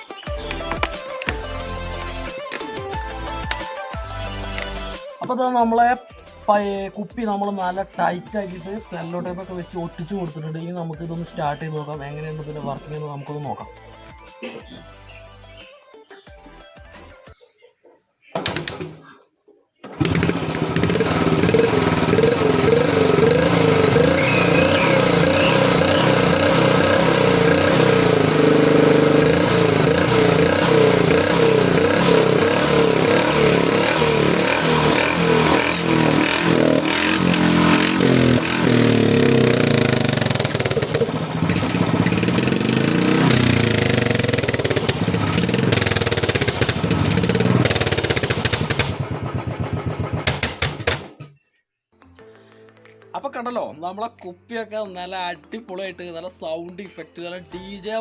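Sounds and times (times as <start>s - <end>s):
motorcycle engine running: 20.0s - 51.1s.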